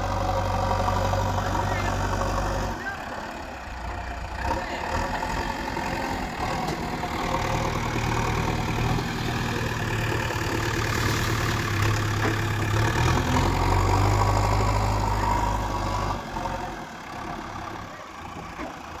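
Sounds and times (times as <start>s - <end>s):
heavy diesel engine running: 0.0s - 19.0s.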